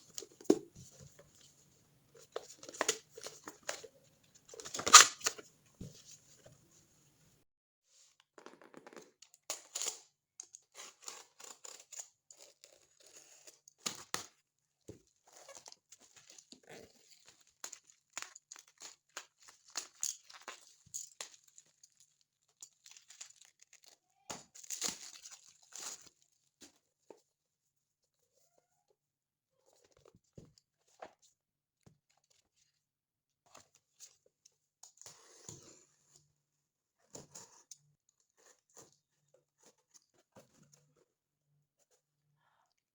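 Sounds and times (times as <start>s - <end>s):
packaging torn and crinkled: 4.6s - 5.4s.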